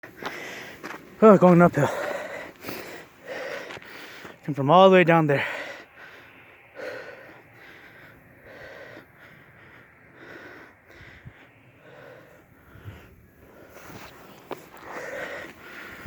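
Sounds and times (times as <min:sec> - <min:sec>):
person breathing hard: 0:00.0 - 0:01.0, 0:01.8 - 0:04.4, 0:05.4 - 0:16.0.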